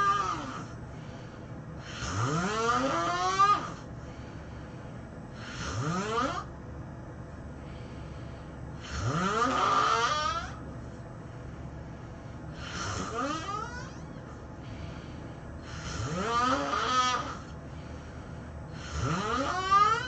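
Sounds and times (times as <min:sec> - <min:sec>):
person snoring: 0:00.0 - 0:00.8, 0:01.8 - 0:03.8, 0:05.4 - 0:06.5, 0:08.8 - 0:10.6, 0:12.5 - 0:14.0, 0:15.6 - 0:17.6, 0:18.7 - 0:20.0.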